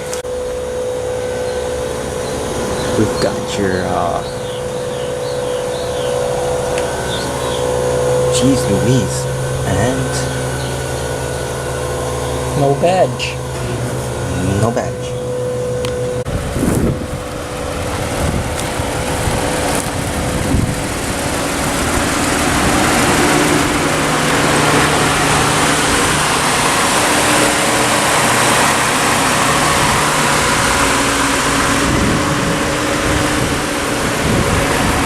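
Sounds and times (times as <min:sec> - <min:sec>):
car engine running: 0:00.0 - 0:35.0.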